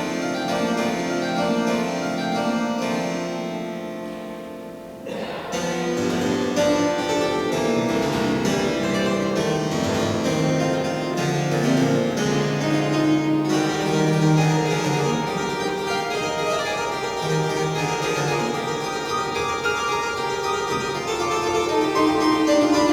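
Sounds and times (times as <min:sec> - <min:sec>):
church pipe organ playing: 0:05.6 - 0:22.9.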